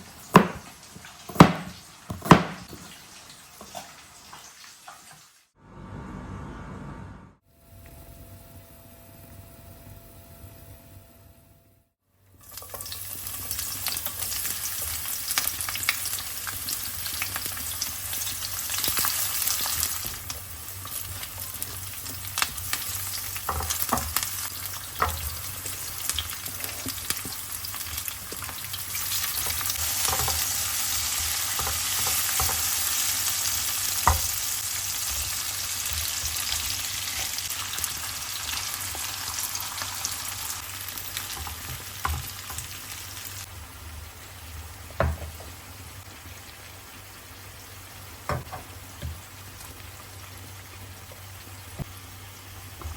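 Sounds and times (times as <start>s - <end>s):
food sizzling in a pan: 12.3s - 52.9s.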